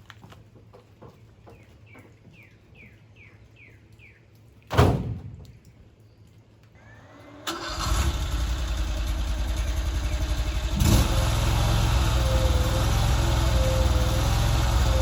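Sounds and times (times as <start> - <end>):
mini skid steer engine running: 7.1 - 15.0.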